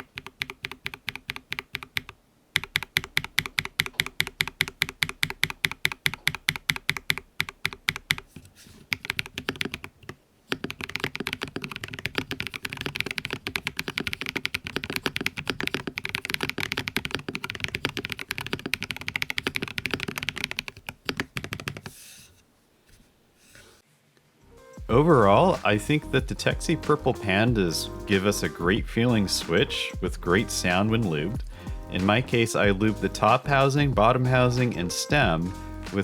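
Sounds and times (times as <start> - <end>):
mechanical keyboard typing: 0.0 - 8.3, 8.9 - 22.0.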